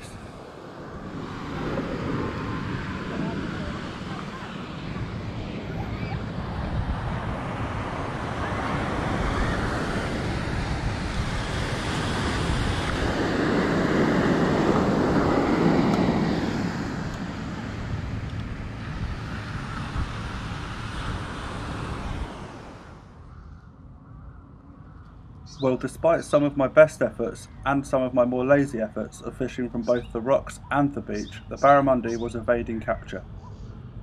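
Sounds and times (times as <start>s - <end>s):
surf washing onto beach: 0.0s - 23.0s
wind on microphone: 0.0s - 23.9s.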